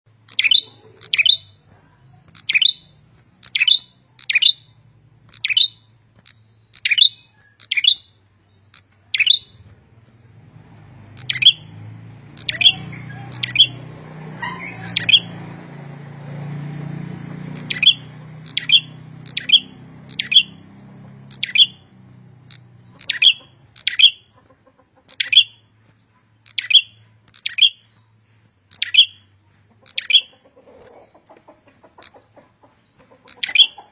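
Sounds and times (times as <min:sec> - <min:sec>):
bird calling sharp high notes: 0:00.2 - 0:01.6, 0:02.2 - 0:09.6, 0:11.1 - 0:15.4, 0:17.5 - 0:24.3, 0:25.1 - 0:25.6, 0:26.4 - 0:28.0, 0:28.7 - 0:29.3, 0:29.9 - 0:30.4, 0:33.2 - 0:33.9.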